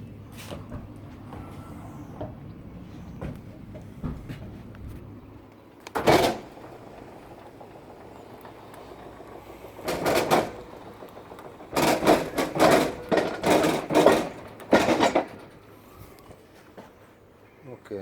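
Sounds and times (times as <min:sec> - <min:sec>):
washing machine clattering and scraping: 0:05.9 - 0:16.1.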